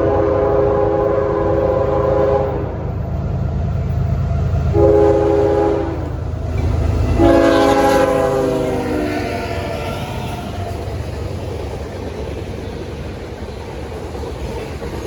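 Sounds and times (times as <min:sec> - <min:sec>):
locomotive air horn blasts: 0:00.0 - 0:02.8, 0:04.7 - 0:06.2, 0:07.0 - 0:10.7
train rumbling: 0:00.0 - 0:15.0.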